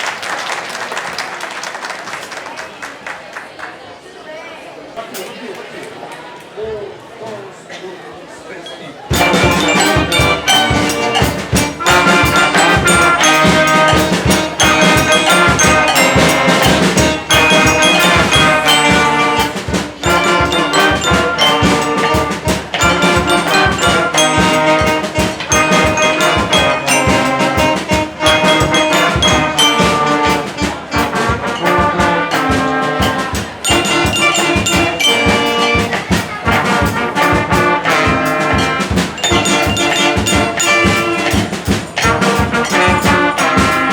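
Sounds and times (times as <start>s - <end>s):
brass band playing: 9.1s - 43.9s
driving drum beat: 9.1s - 43.9s.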